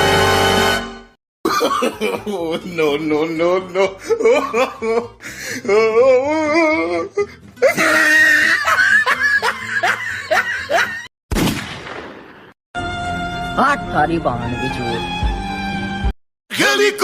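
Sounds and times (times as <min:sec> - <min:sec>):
warbling laugh sound effect: 0:07.6 - 0:11.1
gunshot sound effect: 0:11.3 - 0:12.6.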